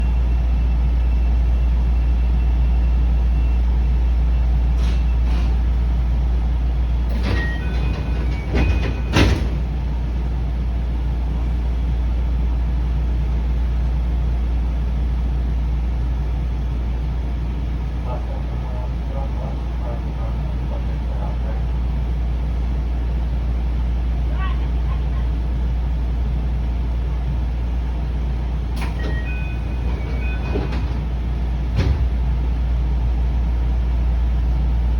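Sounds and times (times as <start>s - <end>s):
low train hum: 0.0s - 34.9s
sliding doors: 7.0s - 11.8s, 28.7s - 32.3s
train door chime: 7.1s - 9.9s, 28.8s - 31.2s.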